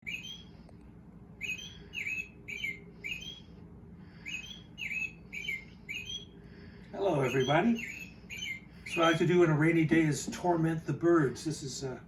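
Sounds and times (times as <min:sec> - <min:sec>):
bird chirps: 0:00.0 - 0:00.6, 0:01.4 - 0:06.4, 0:07.0 - 0:09.3
steady low hum: 0:00.0 - 0:12.0.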